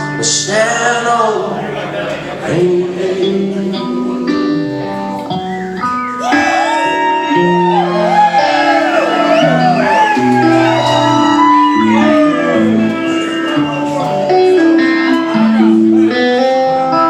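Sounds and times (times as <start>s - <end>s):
bass notes: 0.0s - 17.0s
live country band playing: 0.0s - 17.0s
strummed guitars: 0.0s - 17.0s.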